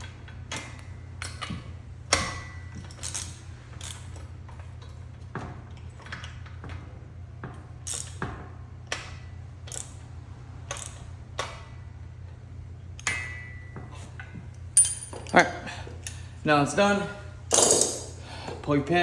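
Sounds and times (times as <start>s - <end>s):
steady low hum: 0.0s - 19.0s
metal clicks: 17.5s - 18.2s.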